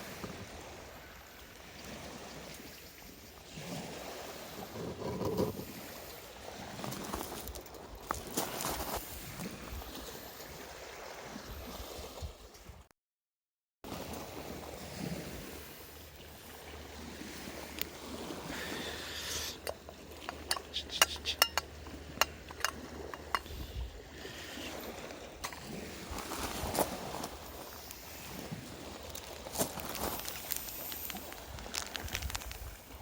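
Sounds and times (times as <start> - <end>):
campfire hissing: 18.4 - 19.7
fire crackles and pops: 29.8 - 32.7.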